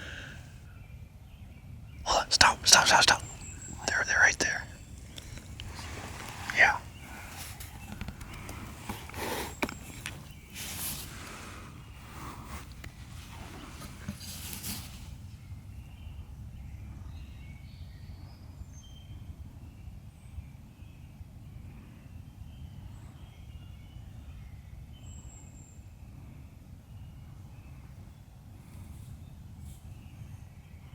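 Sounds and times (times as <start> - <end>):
rustling movement: 3.2 - 15.2.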